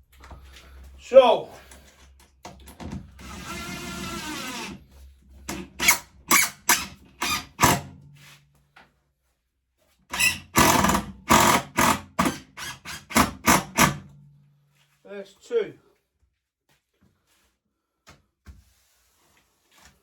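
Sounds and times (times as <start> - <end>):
drill driving screw into metal: 3.2 - 4.8, 5.5 - 7.9, 10.1 - 14.0.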